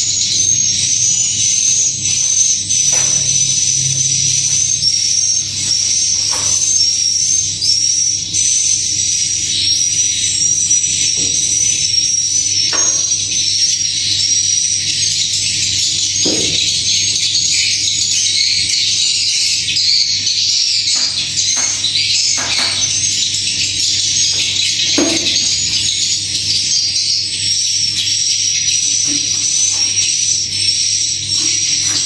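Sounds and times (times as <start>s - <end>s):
swiftlets twittering: 0.0s - 7.7s.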